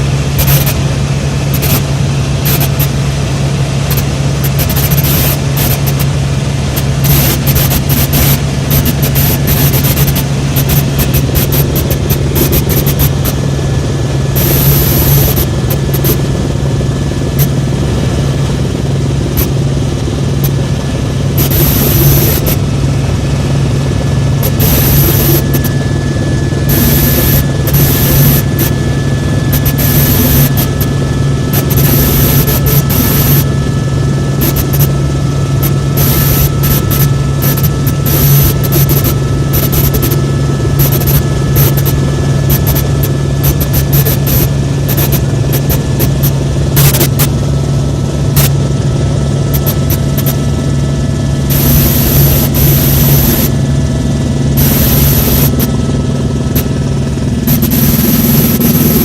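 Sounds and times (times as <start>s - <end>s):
helicopter turbine and rotor drone: 0.0s - 59.0s.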